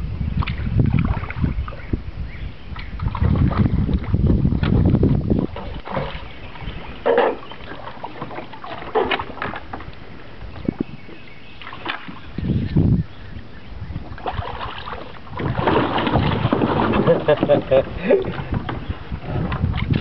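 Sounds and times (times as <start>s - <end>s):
wind on microphone: 0.0s - 20.0s
water sloshing around boat: 0.2s - 20.0s.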